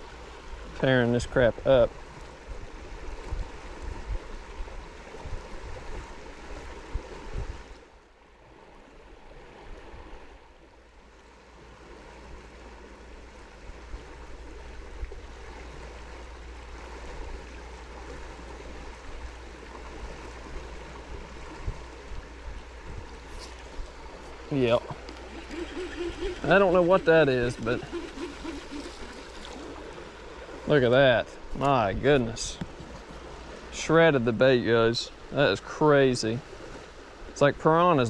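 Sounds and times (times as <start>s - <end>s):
river water rushing: 22.7s - 30.7s.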